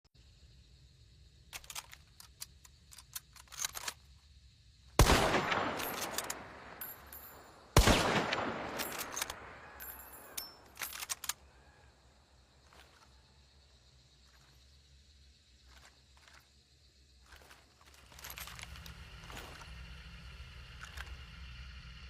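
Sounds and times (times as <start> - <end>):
rifle shots echoing: 5.0 - 11.2
rifle bolt clicks: 5.1 - 7.2, 7.8 - 11.4.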